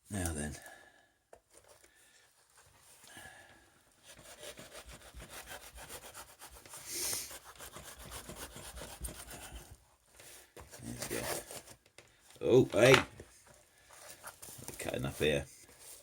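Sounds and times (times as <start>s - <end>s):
knife sawing through packaging: 4.0s - 9.7s, 10.8s - 11.7s.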